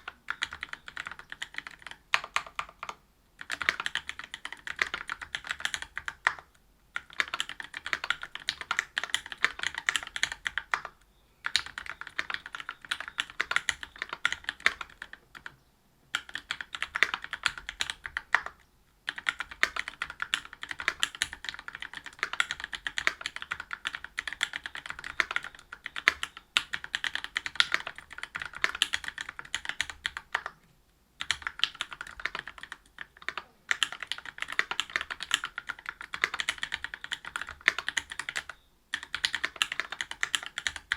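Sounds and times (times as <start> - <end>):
fast mechanical keyboard typing: 0.0 - 15.5, 16.1 - 30.5, 31.2 - 40.9.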